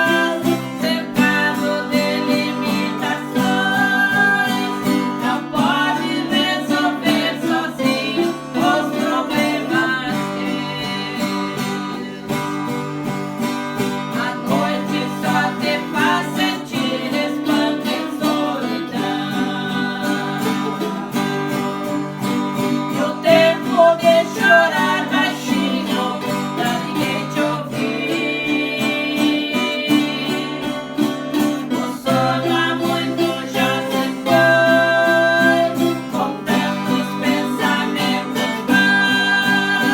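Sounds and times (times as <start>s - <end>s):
acoustic guitar strumming: 0.0s - 39.9s
voices singing a worship song: 0.0s - 39.9s.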